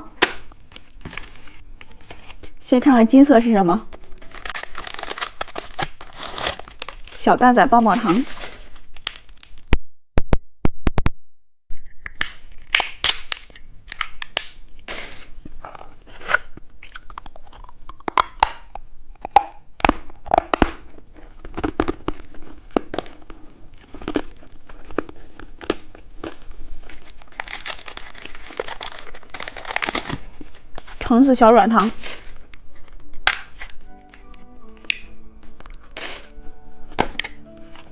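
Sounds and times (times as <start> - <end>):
plastic wrapper crinkling: 3.8 - 9.8, 20.8 - 37.9
hard candy crunching: 3.9 - 7.2, 8.5 - 9.7, 11.8 - 15.0, 15.6 - 30.9, 31.9 - 35.0.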